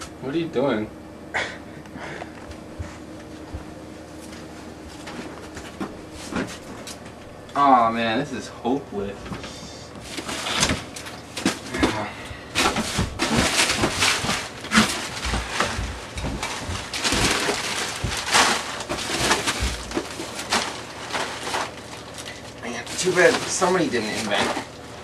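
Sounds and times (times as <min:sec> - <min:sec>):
frozen food packages rustling: 0:09.3 - 0:25.0.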